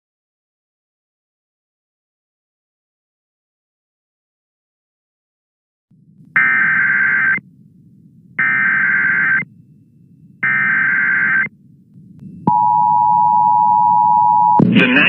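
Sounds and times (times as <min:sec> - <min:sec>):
faint low hum: 0:05.9 - 0:15.0
raspy data tone bursts: 0:06.4 - 0:07.4, 0:08.4 - 0:09.5, 0:10.4 - 0:11.5
two-tone attention signal: 0:06.4 - 0:07.4, 0:08.4 - 0:09.4, 0:10.4 - 0:11.5, 0:12.3 - 0:14.6.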